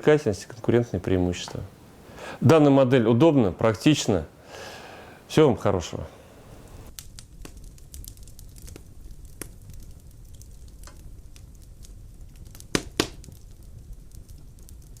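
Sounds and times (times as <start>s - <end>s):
fireplace flame rumbling: 0.0s - 15.0s.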